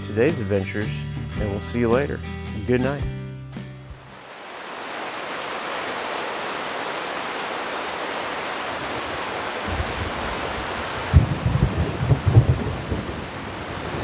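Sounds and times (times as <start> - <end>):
heavy rain: 4.0 - 14.0
low thunder rumble: 9.7 - 14.0.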